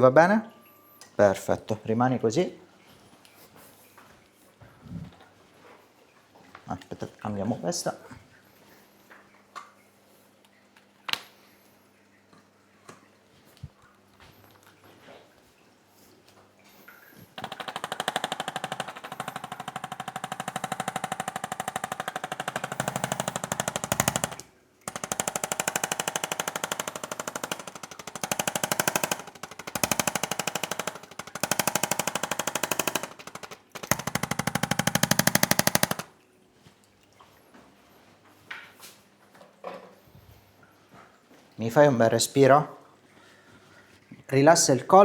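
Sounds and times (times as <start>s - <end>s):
percussion massager hammering: 17.4s - 36.1s.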